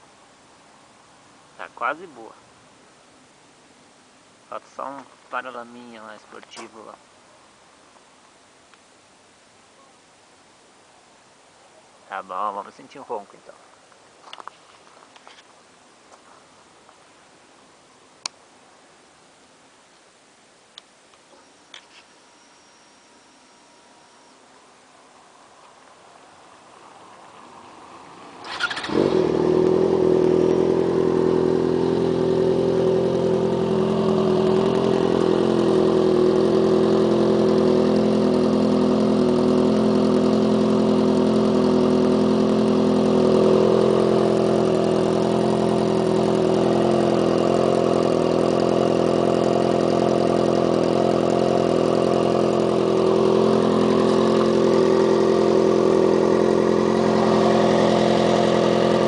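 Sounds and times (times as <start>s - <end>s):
motorcycle engine starting and idling: 28.1s - 59.0s.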